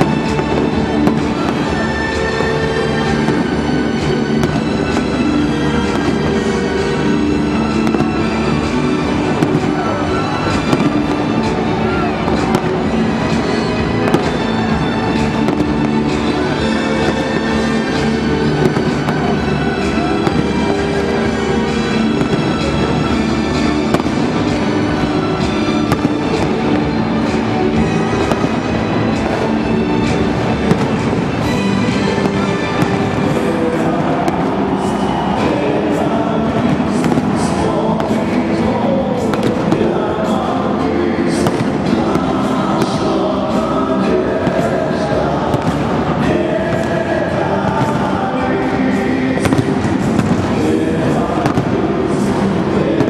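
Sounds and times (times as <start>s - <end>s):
fireworks bursting and crackling: 0.0s - 53.0s
music: 0.0s - 53.0s.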